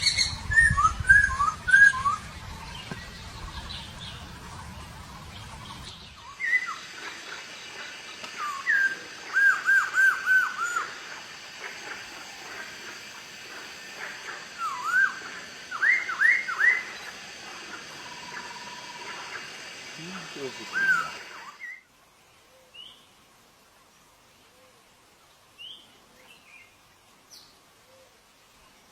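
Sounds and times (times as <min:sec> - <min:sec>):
bird singing whistled phrases: 0:00.0 - 0:02.3, 0:08.4 - 0:10.9, 0:14.6 - 0:17.0, 0:20.6 - 0:21.8.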